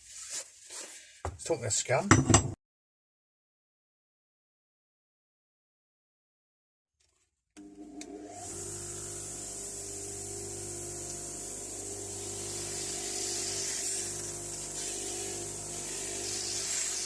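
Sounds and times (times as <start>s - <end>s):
electric wire wheel humming: 7.6s - 17.0s
wire bristles hissing on metal: 8.6s - 17.0s.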